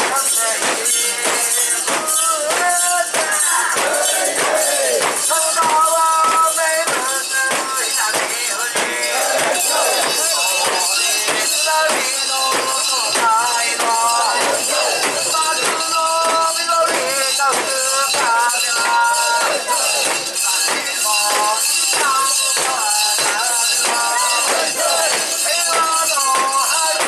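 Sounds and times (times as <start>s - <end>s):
sharp percussion strikes: 0.0s - 27.0s.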